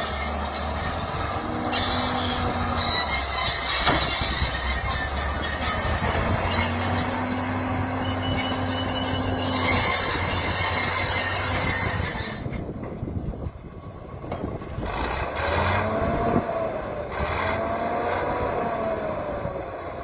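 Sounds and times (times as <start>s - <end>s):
excavator metallic squealing: 0.0s - 12.9s
excavator low groaning: 0.0s - 20.0s.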